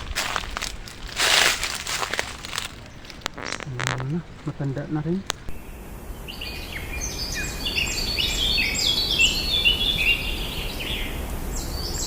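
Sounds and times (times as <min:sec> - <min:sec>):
steady low rumble: 0:00.0 - 0:07.0
small birds chirping: 0:00.0 - 0:12.0.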